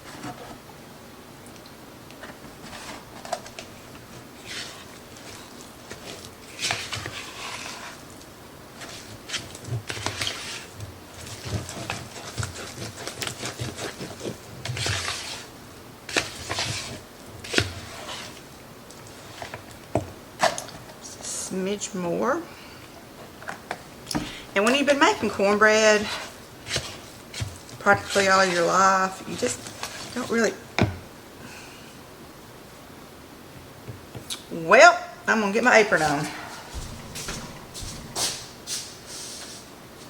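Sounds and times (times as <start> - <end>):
spoon stirring batter: 2.6 - 20.8, 23.5 - 30.7.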